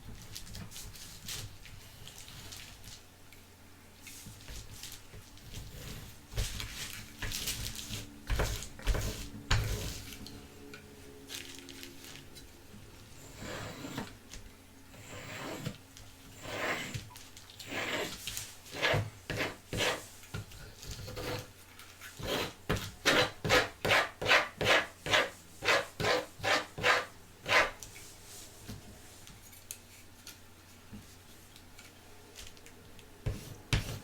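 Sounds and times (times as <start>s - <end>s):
rubbing and scraping: 15.0s - 20.2s, 20.8s - 28.6s.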